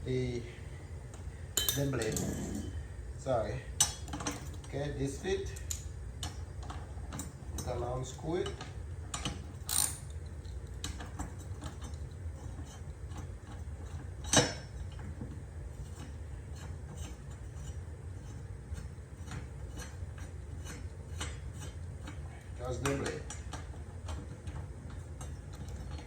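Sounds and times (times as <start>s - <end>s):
sharp metal clank: 1.6s - 2.6s
wrench clicking on metal bolt: 9.1s - 10.1s.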